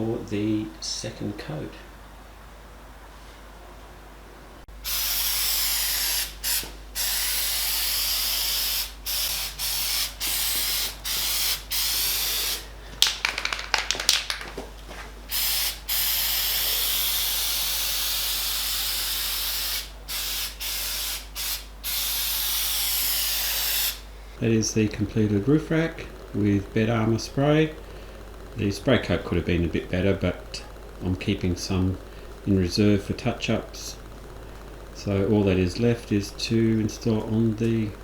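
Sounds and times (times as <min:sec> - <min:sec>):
aerosol can spraying: 0:04.8 - 0:14.0, 0:15.3 - 0:24.0
spray nozzle sputtering: 0:04.8 - 0:14.5, 0:15.3 - 0:24.0.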